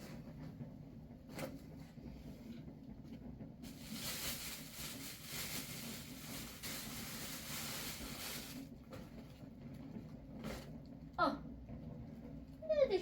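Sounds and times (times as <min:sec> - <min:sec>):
low background hum: 0:00.0 - 0:13.0
rain hissing: 0:03.6 - 0:08.7.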